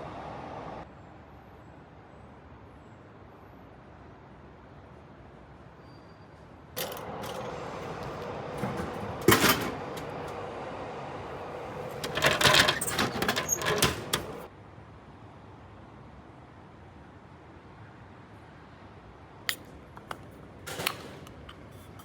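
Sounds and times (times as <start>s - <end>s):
clicks and rattles: 6.8s - 10.4s, 11.8s - 14.5s
vending machine humming: 6.8s - 14.5s.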